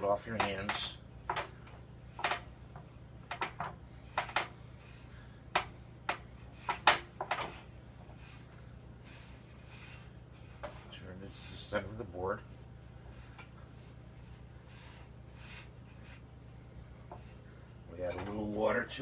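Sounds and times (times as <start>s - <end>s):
hands kneading dough on a board: 13.1s - 17.8s.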